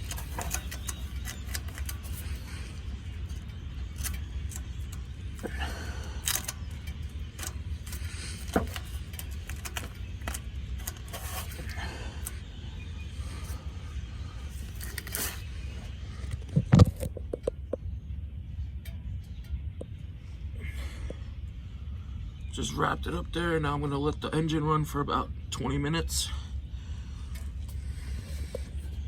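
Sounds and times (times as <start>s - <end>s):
tape scraping and rustling: 0.0s - 5.6s, 6.2s - 12.4s, 14.5s - 15.5s
steady low rumble: 0.0s - 29.0s.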